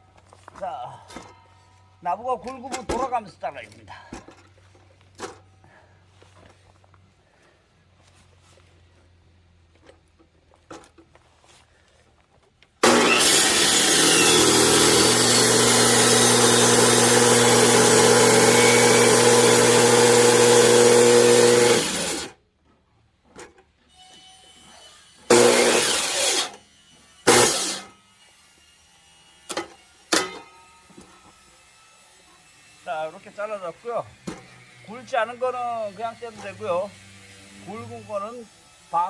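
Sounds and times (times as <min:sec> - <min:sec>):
power saw cutting log: 0:12.8 - 0:22.4, 0:23.9 - 0:39.0.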